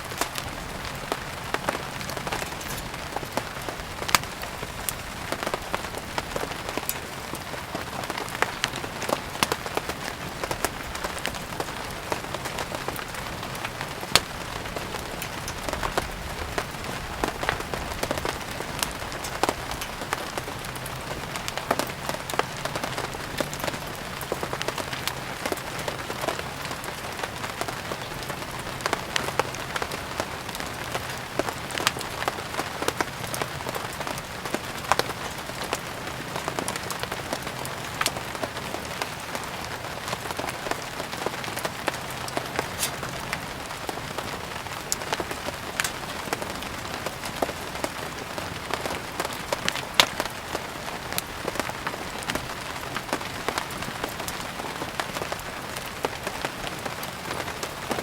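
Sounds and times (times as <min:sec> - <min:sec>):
steady rain: 0:00.0 - 0:58.0
wood fire crackling: 0:00.0 - 0:58.0.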